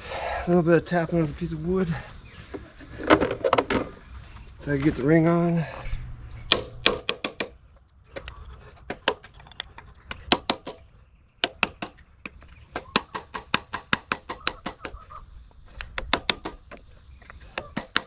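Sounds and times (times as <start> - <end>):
wood tapping on metal: 6.5 - 7.6, 8.2 - 15.0, 15.7 - 18.0.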